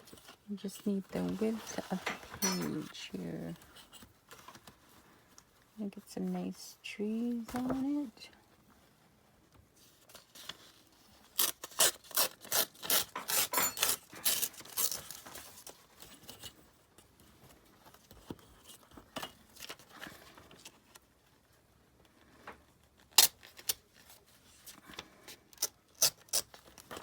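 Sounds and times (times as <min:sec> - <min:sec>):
scissors cutting paper: 0:11.2 - 0:16.5, 0:25.6 - 0:27.0.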